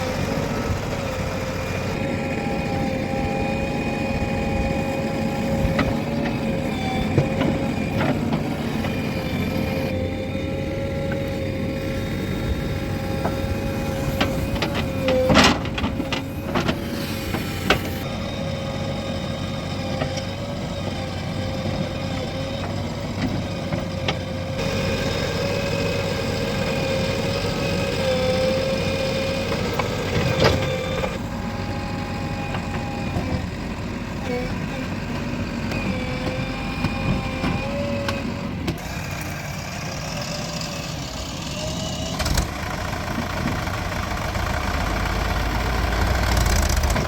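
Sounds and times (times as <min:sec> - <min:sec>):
diesel engine running: 0:00.0 - 0:47.0.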